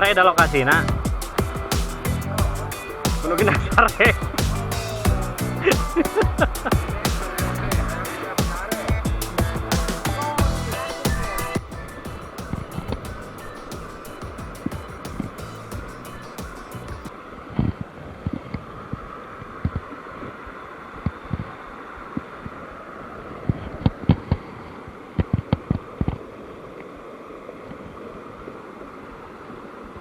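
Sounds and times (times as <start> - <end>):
low thumps: 0.0 - 17.1.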